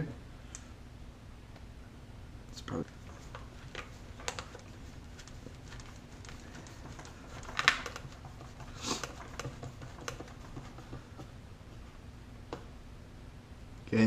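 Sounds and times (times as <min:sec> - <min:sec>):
small screws clicking and scraping: 0:02.9 - 0:10.4.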